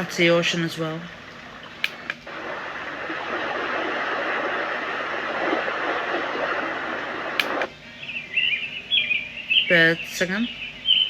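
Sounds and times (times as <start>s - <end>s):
white noise machine rushing: 1.0s - 7.7s.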